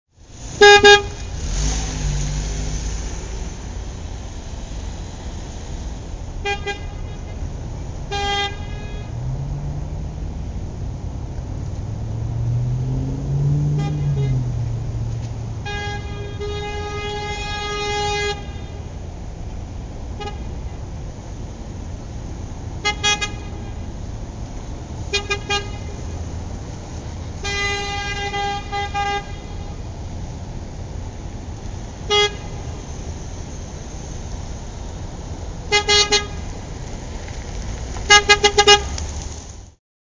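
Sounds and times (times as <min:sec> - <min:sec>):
steady traffic noise: 0:00.1 - 0:39.8
passing vehicle engine rumbling: 0:00.2 - 0:39.8
car horn honking: 0:00.5 - 0:01.7, 0:06.4 - 0:09.3, 0:13.6 - 0:14.9, 0:15.5 - 0:18.9, 0:20.2 - 0:20.7, 0:22.8 - 0:23.9, 0:25.1 - 0:26.1, 0:27.4 - 0:29.8, 0:32.0 - 0:33.0, 0:35.7 - 0:36.5, 0:38.1 - 0:39.0.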